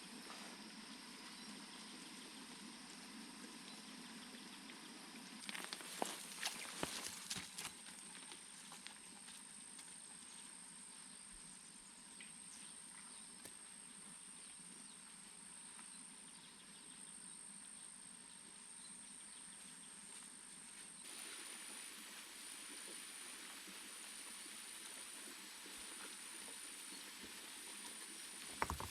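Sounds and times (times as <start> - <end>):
soft even hiss: 19.3 - 28.9.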